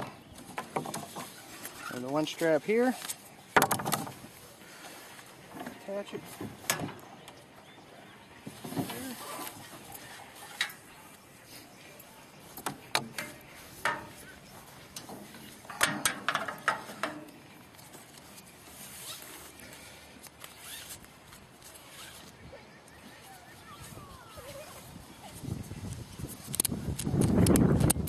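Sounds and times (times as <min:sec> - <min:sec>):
ratchet strap clicking: 0:20.2 - 0:21.0, 0:26.4 - 0:28.0.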